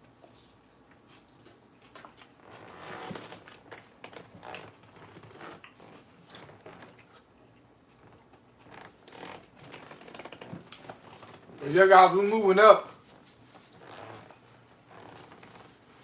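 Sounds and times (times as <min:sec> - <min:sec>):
person chewing crisp lettuce: 0:00.0 - 0:11.6.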